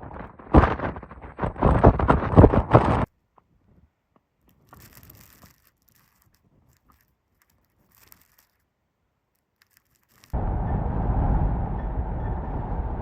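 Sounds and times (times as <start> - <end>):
faint rustle: 2.8 - 10.4
wind buffeting microphone: 10.4 - 13.0.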